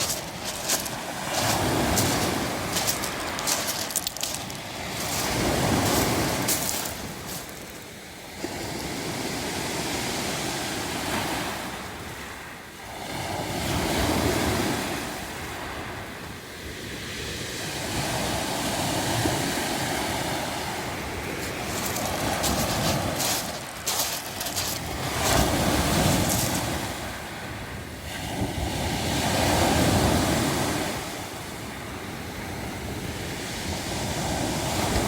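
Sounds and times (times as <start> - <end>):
pebbles clattering: 0.0 - 7.8, 21.4 - 26.7
waves washing over pebbles: 0.0 - 16.1, 17.0 - 31.7.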